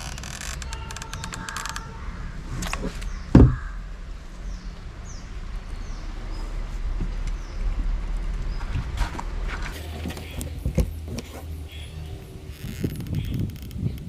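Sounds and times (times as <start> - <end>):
heavy thump: 3.3 - 3.6.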